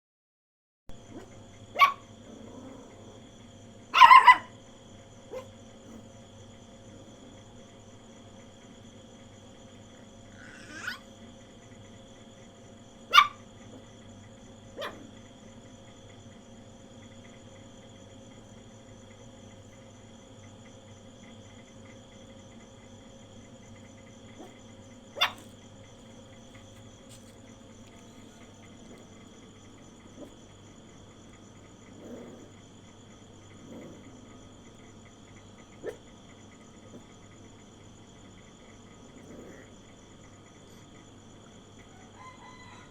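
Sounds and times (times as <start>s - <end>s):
insects trilling: 0.9s - 42.9s
puppy barking: 1.1s - 3.2s, 3.9s - 4.6s, 5.3s - 6.0s, 10.4s - 11.1s, 13.1s - 13.9s, 14.7s - 15.2s, 24.4s - 25.5s, 30.2s - 30.4s, 35.8s - 36.0s.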